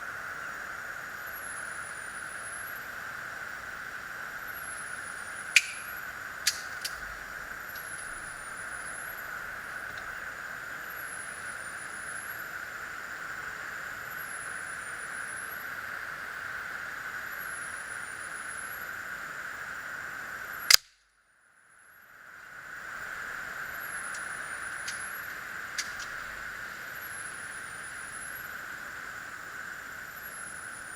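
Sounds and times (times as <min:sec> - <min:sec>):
steady background hiss: 0:00.0 - 0:30.9
air pistol shot: 0:05.6 - 0:05.9.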